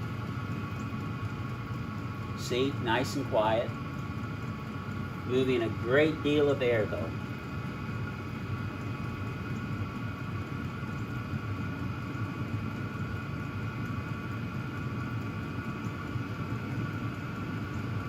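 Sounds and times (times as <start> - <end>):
air heater blower whirring: 0.0 - 18.0.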